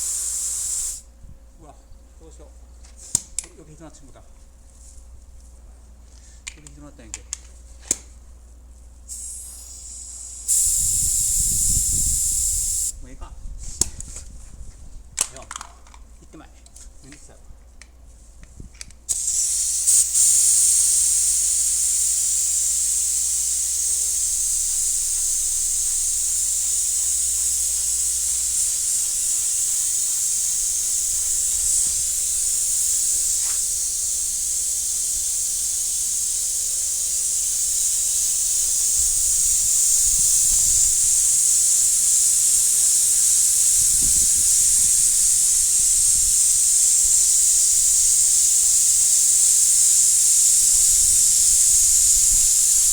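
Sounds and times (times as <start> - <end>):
spray gun hissing: 0.0 - 1.0, 9.1 - 12.9, 19.1 - 52.9.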